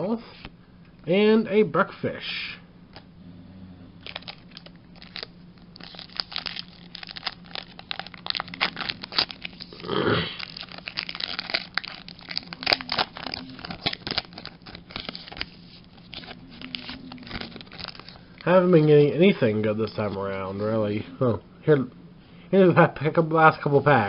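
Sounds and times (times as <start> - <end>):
foil wrappers crinkling: 4.0 - 20.6.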